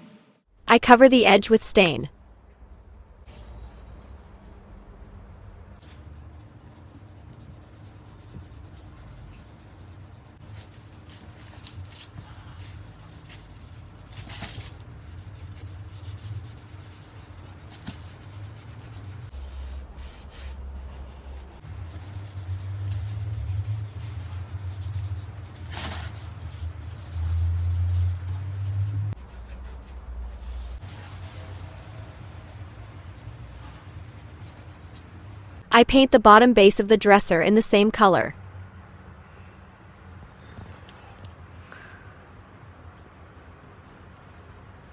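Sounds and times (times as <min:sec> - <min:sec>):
cloth rubbing on wood: 0:05.8 - 0:29.8, 0:30.4 - 0:35.6.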